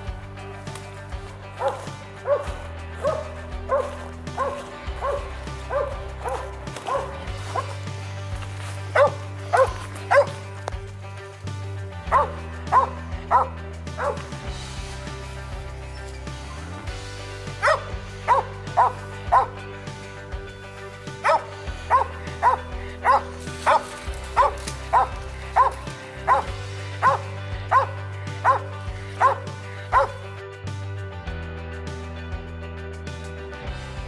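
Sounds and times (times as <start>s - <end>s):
background music with low notes: 0.0s - 34.0s
dog barking: 1.4s - 8.0s, 8.8s - 10.7s, 12.1s - 14.3s, 17.5s - 20.2s, 21.2s - 30.3s.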